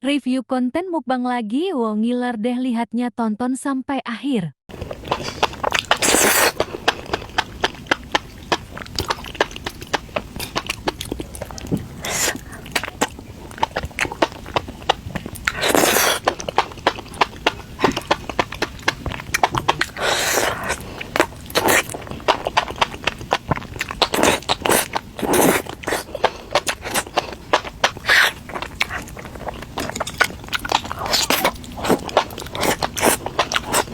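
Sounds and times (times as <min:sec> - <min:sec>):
crunchy bursts: 0:04.7 - 0:33.9
rapid chewing and biting: 0:04.7 - 0:33.9.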